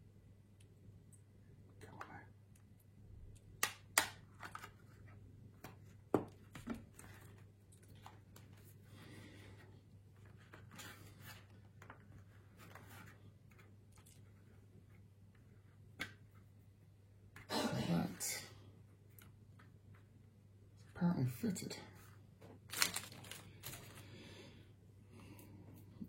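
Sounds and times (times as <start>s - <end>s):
sharp plastic clicks: 3.4s - 4.2s.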